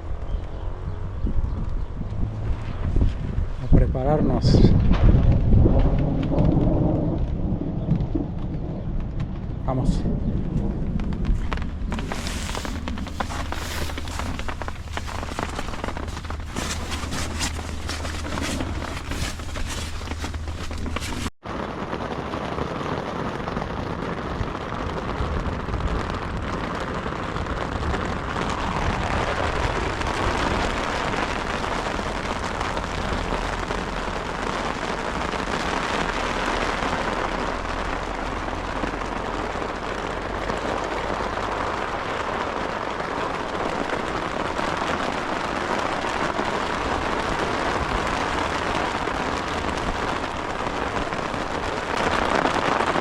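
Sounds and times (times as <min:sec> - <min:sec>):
low rumble: 0:04.4 - 0:21.3
heavy rain falling: 0:05.2 - 0:53.0.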